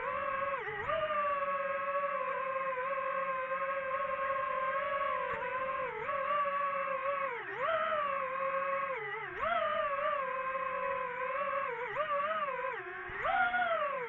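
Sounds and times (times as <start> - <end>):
drone propellers whining: 0.0 - 14.0.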